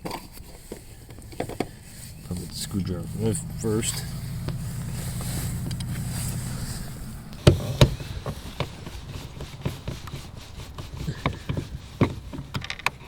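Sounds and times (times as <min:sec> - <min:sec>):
low steady hum: 0:00.6 - 0:08.7.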